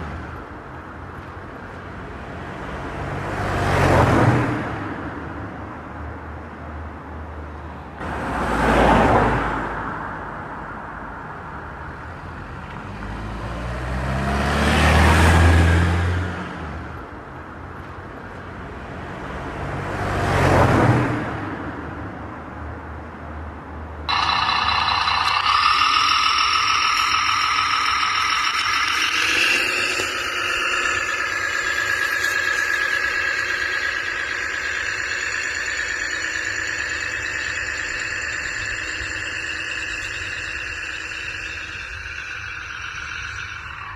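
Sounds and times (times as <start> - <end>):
high whining tones: 0.0 - 1.2, 24.1 - 43.9
vehicles passing: 0.0 - 43.9.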